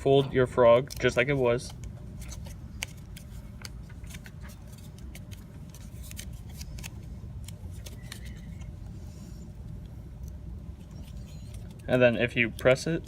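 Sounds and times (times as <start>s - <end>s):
low steady rumble: 0.0s - 13.0s
paper crinkling: 0.8s - 8.7s, 10.8s - 13.0s.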